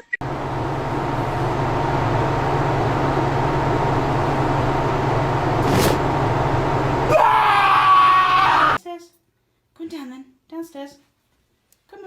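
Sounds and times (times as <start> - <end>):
mechanical rumble and hum: 0.2 - 8.8.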